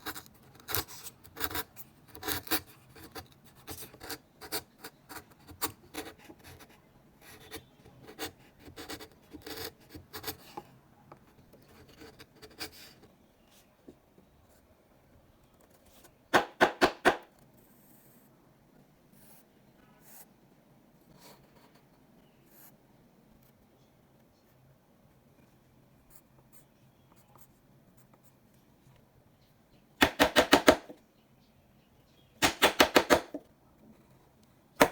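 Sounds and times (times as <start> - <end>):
sharp knocks on wood: 16.3 - 17.2.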